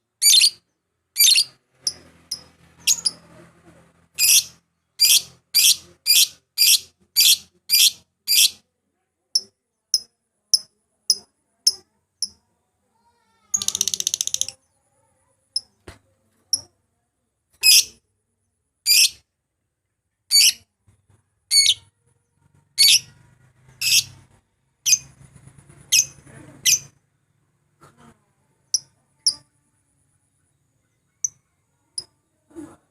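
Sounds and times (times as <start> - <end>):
lovebird chirping: 0.2 - 0.6, 1.2 - 3.2, 4.2 - 8.6, 22.8 - 23.1, 23.8 - 24.1.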